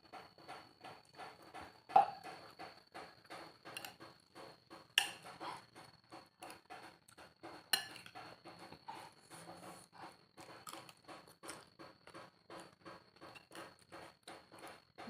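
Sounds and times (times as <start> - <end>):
cutlery clinking against bowl: 3.7 - 4.1, 5.0 - 5.4, 7.5 - 8.4
person chewing: 10.0 - 11.7.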